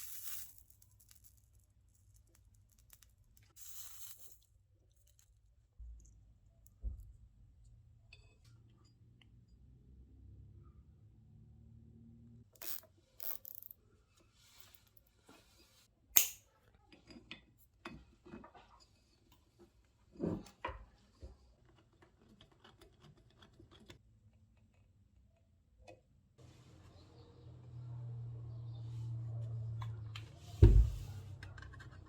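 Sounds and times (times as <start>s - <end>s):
small metal parts clicking: 0.0s - 5.4s.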